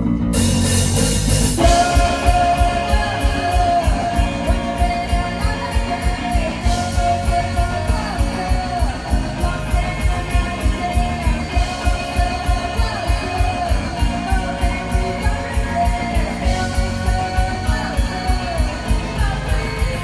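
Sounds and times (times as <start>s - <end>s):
driving drum beat: 0.0s - 20.0s
electric guitar bending notes: 0.0s - 20.0s.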